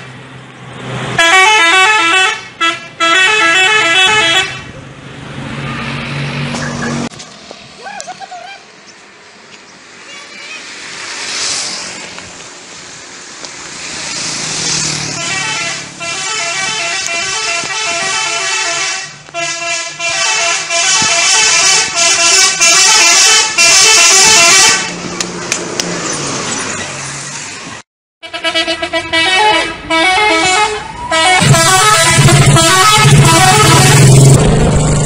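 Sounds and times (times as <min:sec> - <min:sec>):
musical air horn: 0:01.2 - 0:04.7, 0:15.0 - 0:25.0, 0:28.2 - 0:34.4.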